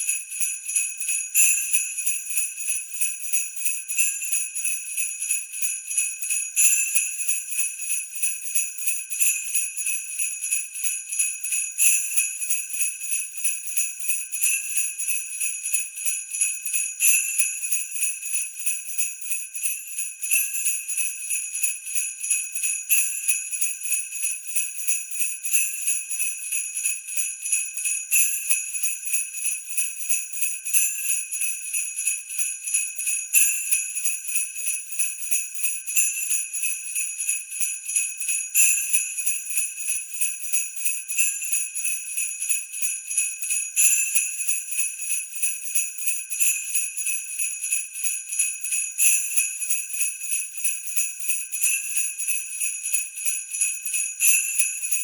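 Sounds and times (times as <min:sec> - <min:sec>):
sleigh bells jingling: 0:15.4 - 0:55.0.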